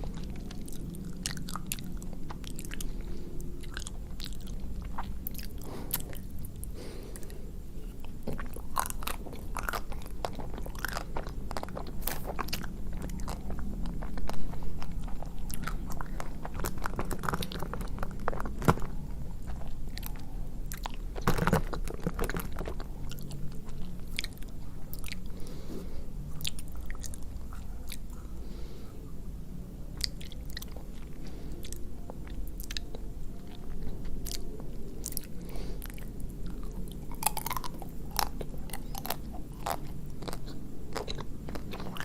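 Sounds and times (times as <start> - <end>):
chewing ice cream bar: 0.0 - 25.6, 26.2 - 28.7, 29.9 - 42.0
chocolate shell crunching: 8.0 - 25.2, 30.0 - 42.0.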